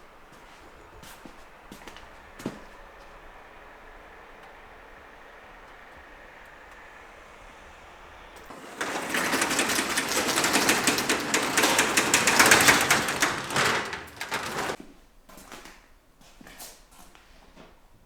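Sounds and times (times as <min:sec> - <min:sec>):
power tool rattling: 0:01.5 - 0:14.8.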